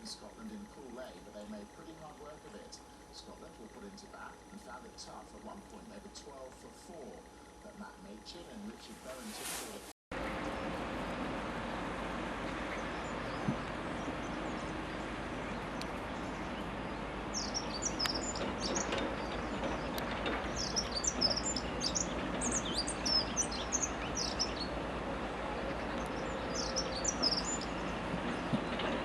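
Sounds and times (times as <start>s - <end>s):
outdoor background noise: 0.0s - 29.0s
small birds chirping: 12.4s - 29.0s.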